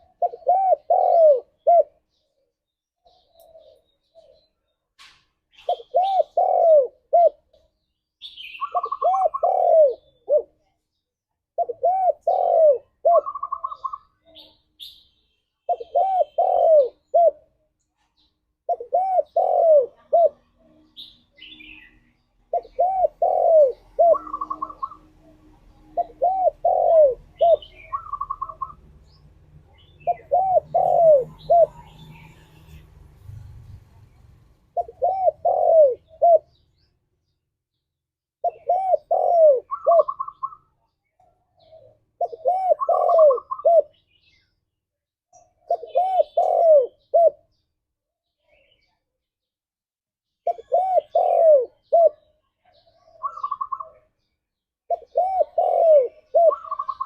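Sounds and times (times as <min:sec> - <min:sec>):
dove cooing: 0:00.0 - 0:02.3, 0:03.0 - 0:04.5, 0:05.5 - 0:07.7, 0:08.5 - 0:10.6, 0:11.6 - 0:14.5, 0:15.7 - 0:17.6, 0:18.2 - 0:20.8, 0:22.1 - 0:28.8, 0:29.7 - 0:32.8, 0:34.7 - 0:36.6, 0:38.4 - 0:40.7, 0:41.5 - 0:44.0, 0:45.6 - 0:47.4, 0:50.4 - 0:54.0, 0:54.9 - 0:57.0
small birds chirping: 0:00.0 - 0:49.6, 0:50.2 - 0:57.0.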